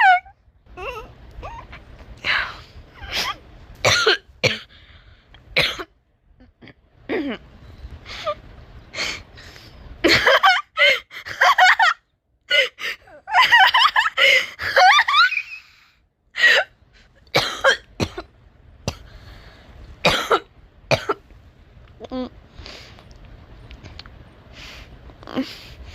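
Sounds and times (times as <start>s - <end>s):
person coughing: 3.2s - 4.7s, 5.6s - 5.9s, 17.4s - 18.3s, 20.1s - 21.2s.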